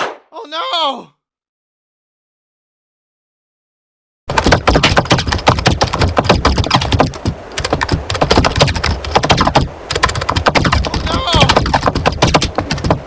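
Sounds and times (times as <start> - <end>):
rapid irregular clicking and clattering: 4.3 - 13.0.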